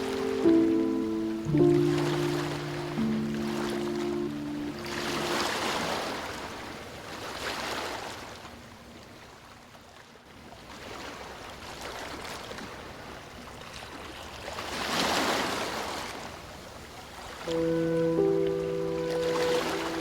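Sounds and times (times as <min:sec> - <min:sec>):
ocean surf washing onto beach: 0:00.0 - 0:06.8, 0:17.5 - 0:20.0.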